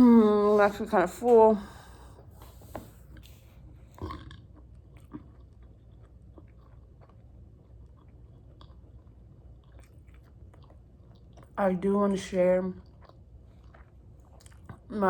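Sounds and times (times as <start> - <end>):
person chewing food: 1.8 - 11.6, 12.8 - 15.0.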